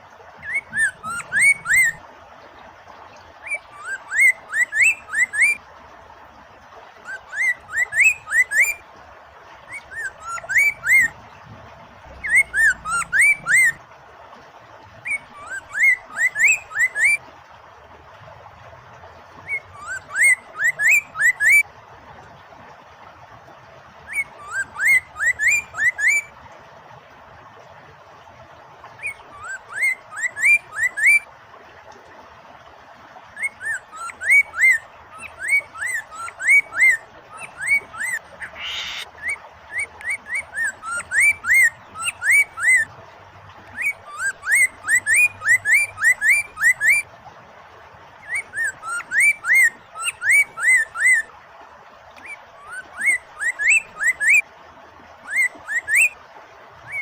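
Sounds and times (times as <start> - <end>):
running water hiss: 0.0 - 57.0
bird whistling upswept notes: 0.4 - 2.0, 33.4 - 42.9.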